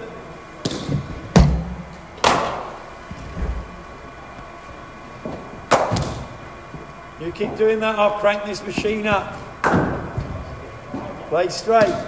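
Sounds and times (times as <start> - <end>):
cricket bat hitting ball: 0.6 - 2.8, 5.3 - 6.3, 9.1 - 10.4
heavy low thump: 0.9 - 2.0.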